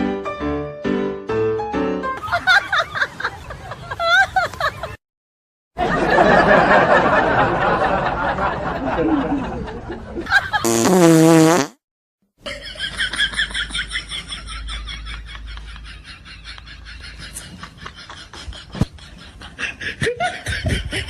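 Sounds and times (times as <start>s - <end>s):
prank fart noise: 10.6s - 11.8s.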